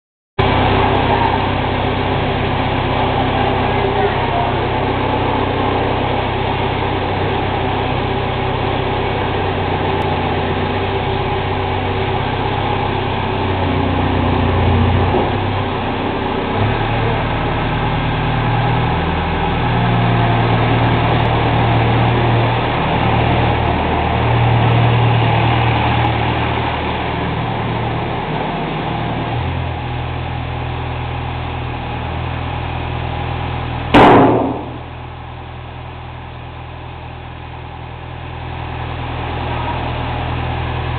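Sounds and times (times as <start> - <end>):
diesel engine running: 0.4 - 40.9
loud thump: 34.0 - 34.9.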